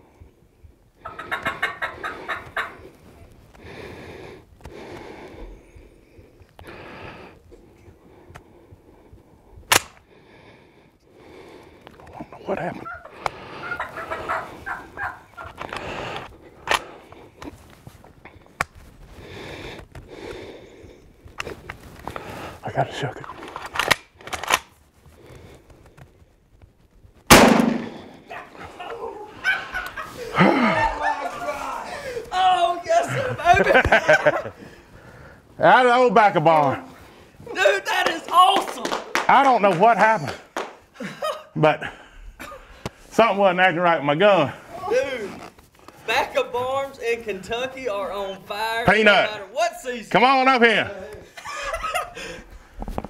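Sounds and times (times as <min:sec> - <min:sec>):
person breathing softly: 0:02.0 - 0:15.0, 0:15.7 - 0:22.6, 0:34.2 - 0:35.6, 0:52.1 - 0:53.0
shotgun shot: 0:27.3 - 0:28.2.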